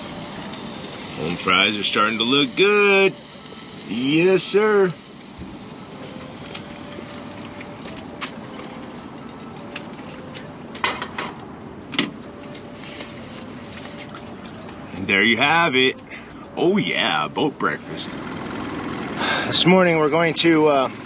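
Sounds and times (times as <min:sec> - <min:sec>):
food sizzling in frying pan: 0:00.0 - 0:10.3.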